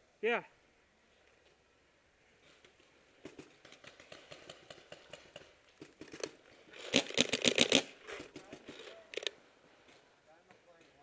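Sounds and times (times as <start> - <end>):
paintball markers firing: 3.2 - 9.4.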